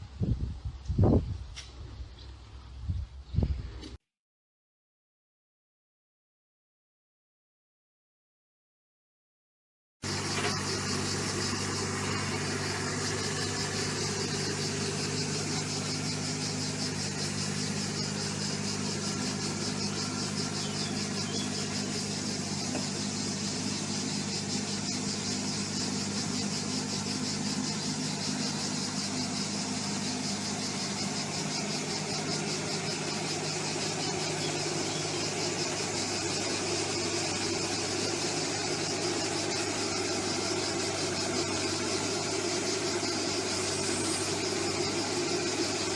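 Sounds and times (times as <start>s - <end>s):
heavy machine engine humming: 10.1s - 45.9s.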